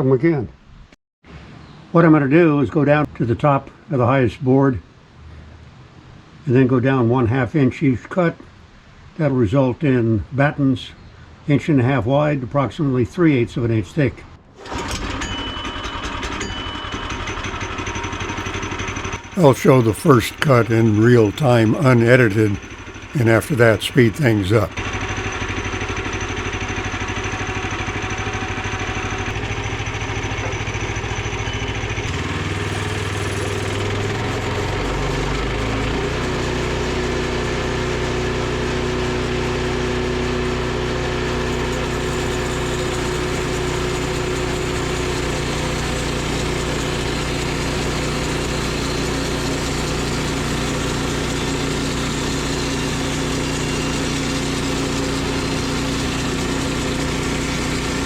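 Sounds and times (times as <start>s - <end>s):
sawmill engine running: 17.1s - 58.0s.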